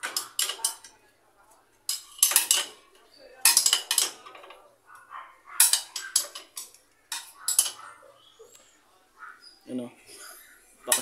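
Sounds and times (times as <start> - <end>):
metal tools clinking: 0.0 - 1.0, 1.9 - 2.8, 3.4 - 4.6, 5.6 - 7.9.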